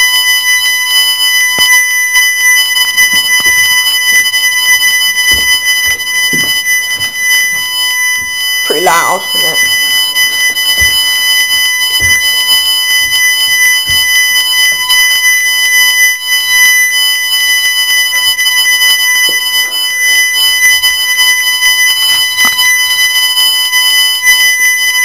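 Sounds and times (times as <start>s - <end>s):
fire alarm high-pitched tone: 0.0s - 25.0s.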